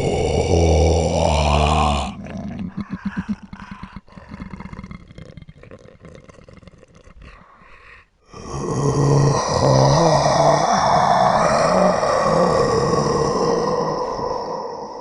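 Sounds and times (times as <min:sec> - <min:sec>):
low guttural roar: 0:00.0 - 0:02.6, 0:08.4 - 0:15.0.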